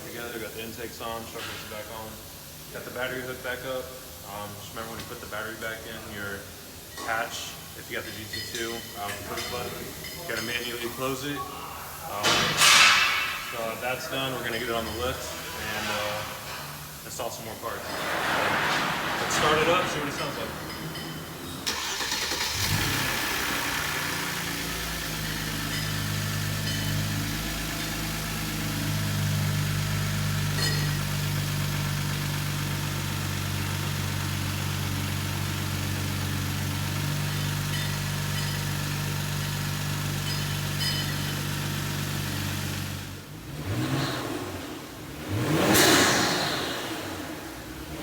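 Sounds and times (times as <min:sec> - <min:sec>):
car engine idling: 0:17.7 - 0:48.0
engine revving: 0:21.6 - 0:48.0.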